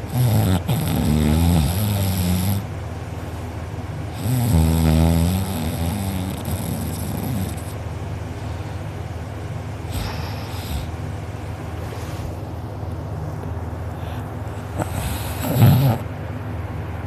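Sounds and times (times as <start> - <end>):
person snoring loudly: 0.0 - 2.7, 4.1 - 7.8, 14.8 - 16.1.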